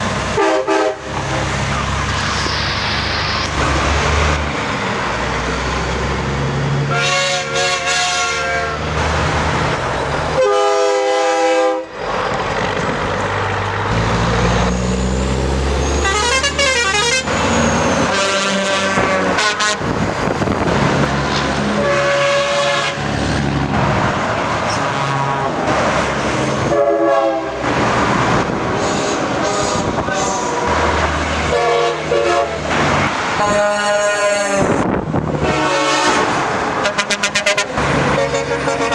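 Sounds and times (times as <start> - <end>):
passing traffic rumble: 0.0 - 38.9
truck air horn blasts: 0.4 - 1.2, 6.9 - 8.9, 10.4 - 12.0, 15.9 - 20.0, 21.7 - 23.2, 26.6 - 27.7, 28.7 - 30.7, 31.4 - 32.6, 33.4 - 38.9.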